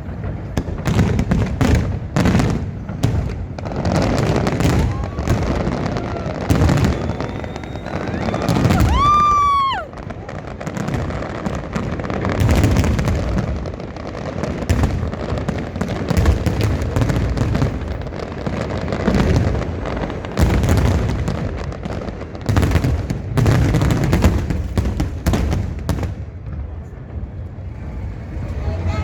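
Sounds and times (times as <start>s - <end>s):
fireworks crackling: 0.0s - 29.0s
firework shells bursting: 2.8s - 10.2s.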